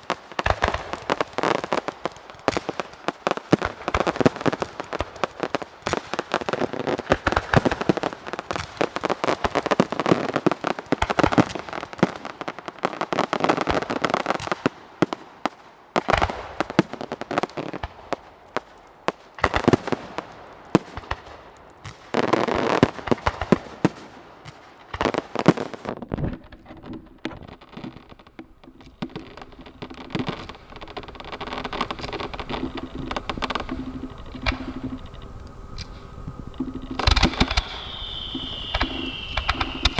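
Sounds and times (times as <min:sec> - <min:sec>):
fireworks crackling and banging: 0:00.0 - 0:39.9
steady low hum: 0:28.4 - 0:39.9.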